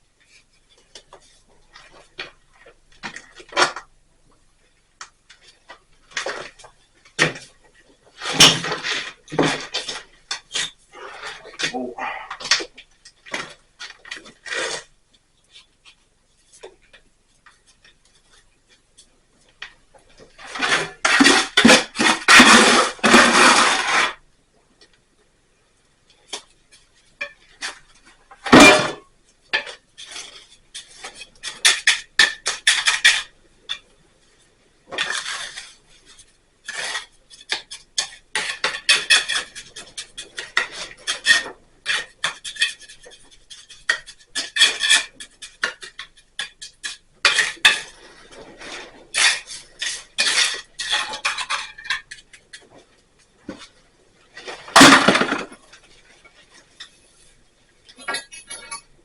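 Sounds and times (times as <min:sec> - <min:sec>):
metal tool scraping and clinking: 0:57.9 - 0:59.0.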